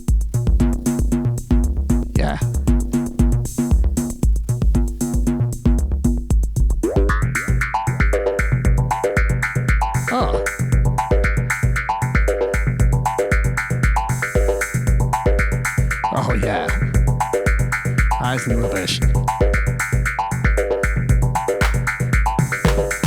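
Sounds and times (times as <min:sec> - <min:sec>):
kick drum beat: 0:00.0 - 0:18.3, 0:19.0 - 0:23.0
synth bass line: 0:06.8 - 0:15.9.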